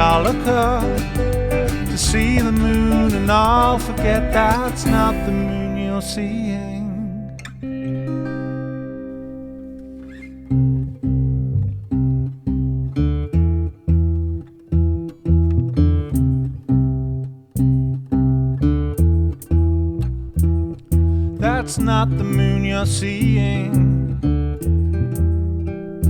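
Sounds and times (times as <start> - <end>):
held chord: 0.0 - 10.0
acoustic guitar picking: 0.0 - 26.0
low bass notes: 0.0 - 26.0.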